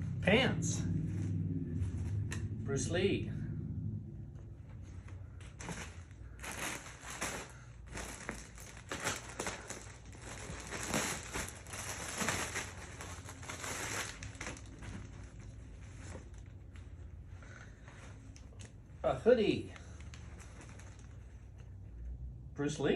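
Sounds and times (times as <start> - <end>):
packaging crinkling and rustling: 5.4 - 17.0, 19.9 - 21.8.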